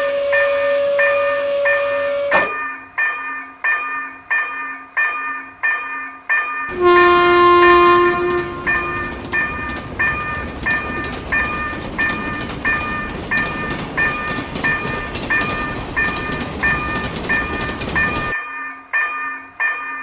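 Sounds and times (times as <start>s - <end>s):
passing train rumbling: 0.0s - 2.5s, 6.7s - 18.4s
level-crossing bell clanging: 0.0s - 20.0s.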